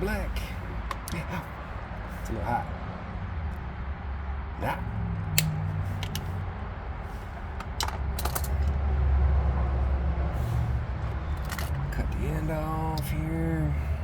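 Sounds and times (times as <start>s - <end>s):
steady low rumble: 0.0s - 14.0s
tools and small parts clicking: 0.8s - 1.2s, 5.3s - 6.4s, 7.2s - 8.9s, 11.0s - 11.9s.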